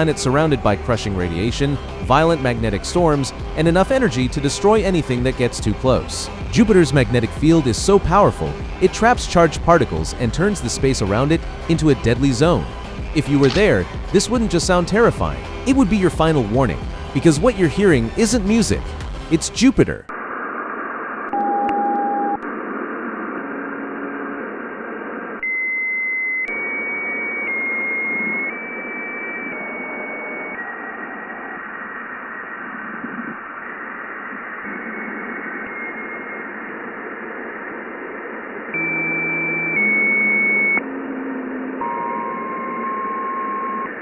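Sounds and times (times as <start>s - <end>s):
radio hiss: 0.0s - 21.3s, 28.2s - 40.8s.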